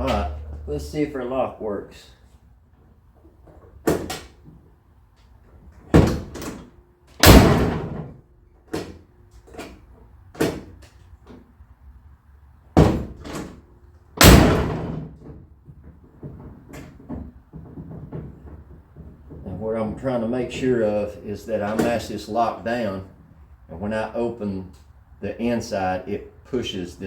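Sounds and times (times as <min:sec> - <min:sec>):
car door slamming: 0:07.2 - 0:08.2, 0:14.2 - 0:15.2.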